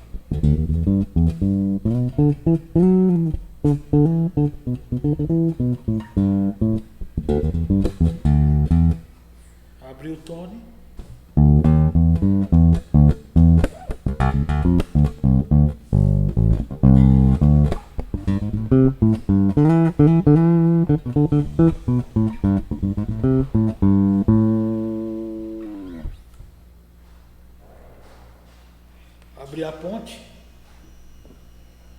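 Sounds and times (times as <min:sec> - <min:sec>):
electric bass plucked notes: 0:00.0 - 0:09.1, 0:11.3 - 0:26.3.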